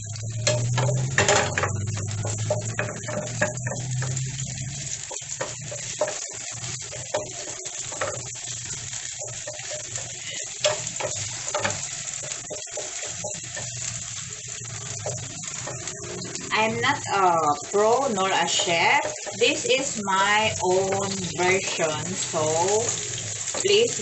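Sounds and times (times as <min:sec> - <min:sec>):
ginger sizzling in hot oil: 0:00.0 - 0:24.0
stirring clicks: 0:00.2 - 0:16.5, 0:17.6 - 0:24.0.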